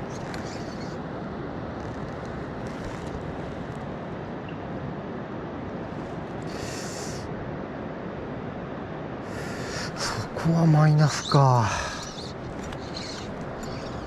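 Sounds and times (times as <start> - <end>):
stream water rushing: 5.8 - 14.0.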